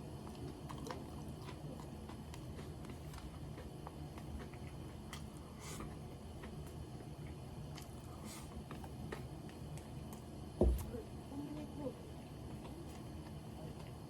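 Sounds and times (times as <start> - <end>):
person chewing food: 0.0 - 10.4.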